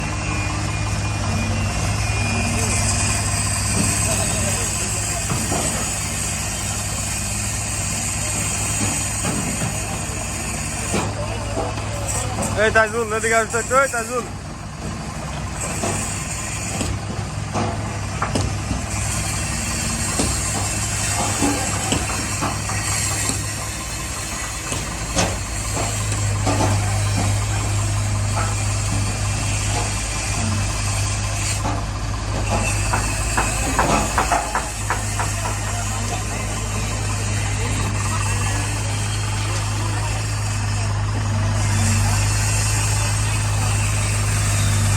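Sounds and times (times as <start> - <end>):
heavy machine engine idling: 0.0 - 44.9
knocks and clatter: 31.6 - 36.7.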